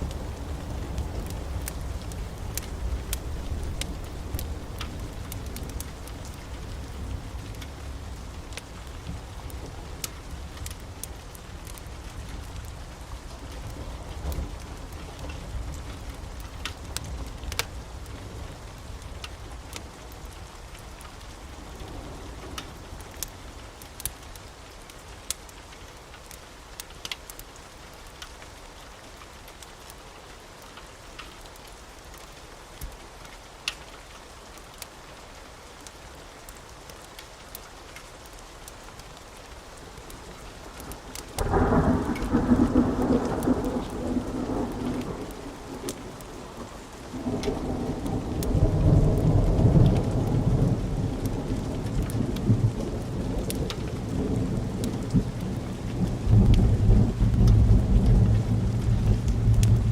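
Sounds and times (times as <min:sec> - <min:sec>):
thunder rumbling: 0:00.0 - 0:10.4, 0:40.9 - 0:59.9
steady rain: 0:00.0 - 0:59.9.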